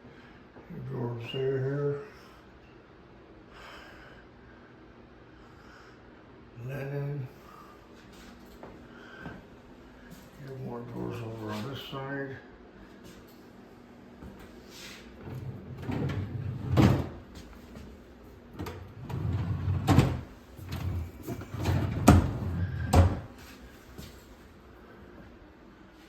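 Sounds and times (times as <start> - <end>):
drawer sliding rumble: 15.2 - 17.4, 18.5 - 23.5.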